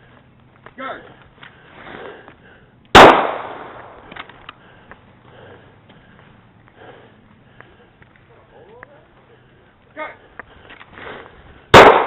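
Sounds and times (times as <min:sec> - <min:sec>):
pistol shot with echo: 0:03.0 - 0:04.1, 0:11.7 - 0:12.0.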